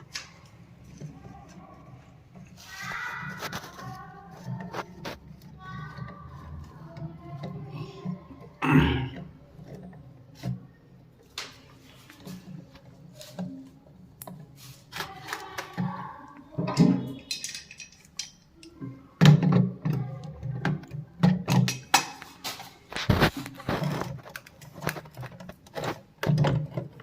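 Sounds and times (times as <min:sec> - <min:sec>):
low background murmur: 0:00.0 - 0:27.0
plastic parts clicking and knocking: 0:00.0 - 0:27.0.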